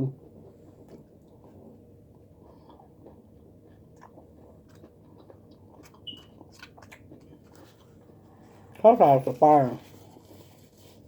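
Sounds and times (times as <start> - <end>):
chewing food: 0.2 - 11.0
wet mouth clicks: 3.9 - 7.4.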